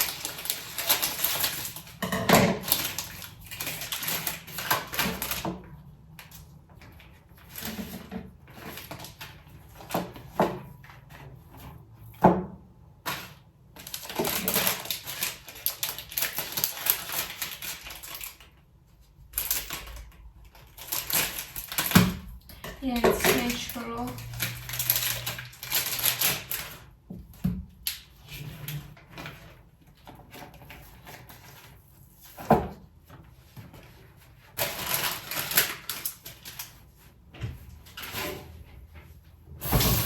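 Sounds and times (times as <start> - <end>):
kitchen items clattering: 0.0 - 5.7, 7.0 - 15.4, 20.6 - 27.5, 37.7 - 40.0
kitchen items rustling: 0.0 - 40.0.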